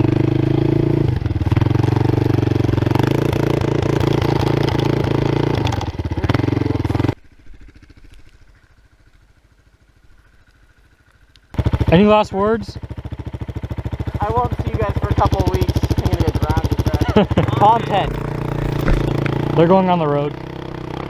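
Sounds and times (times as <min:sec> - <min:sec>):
quad engine running: 0:00.0 - 0:08.4, 0:11.6 - 0:21.0.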